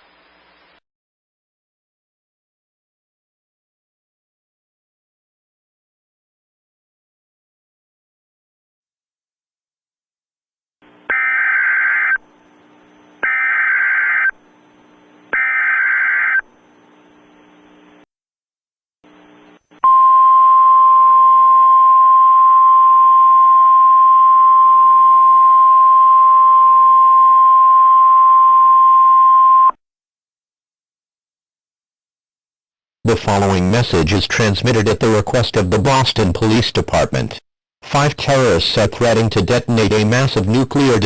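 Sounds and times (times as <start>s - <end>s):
faint radio static: 10.8s - 18.1s, 19.1s - 19.8s
long steady attention tone: 19.1s - 29.8s.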